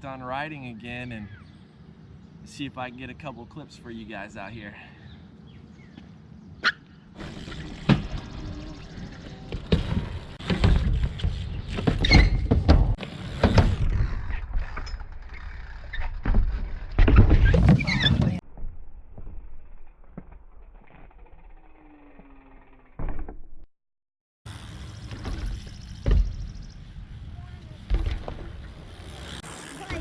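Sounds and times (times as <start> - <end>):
bike knocks and clatter: 7.2 - 18.4, 23.0 - 23.6, 24.7 - 26.6, 27.8 - 30.0
bike tyres rolling on hard ground: 7.2 - 22.2, 24.5 - 30.0.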